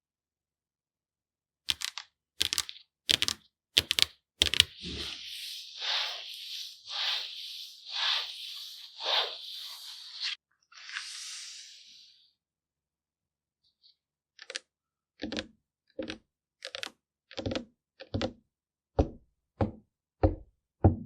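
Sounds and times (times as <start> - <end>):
makeup clicks and crackles: 1.7 - 4.8
scratchy swishing strokes: 4.4 - 12.1.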